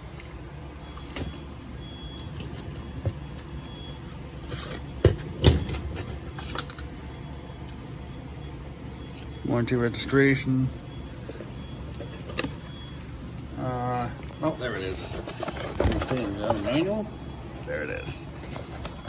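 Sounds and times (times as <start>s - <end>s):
steady low hum: 0.0s - 19.0s
packaging rustling: 14.4s - 19.0s.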